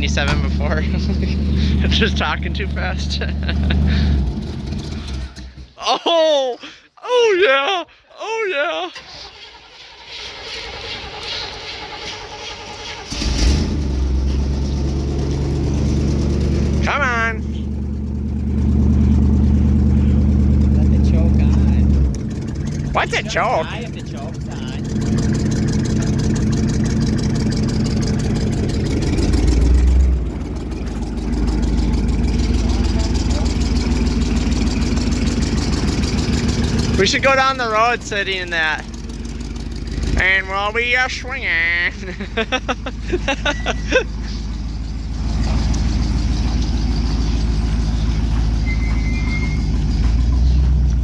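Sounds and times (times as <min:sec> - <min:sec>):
truck engine exhaust rumble: 0:00.0 - 0:05.8, 0:09.0 - 0:51.0.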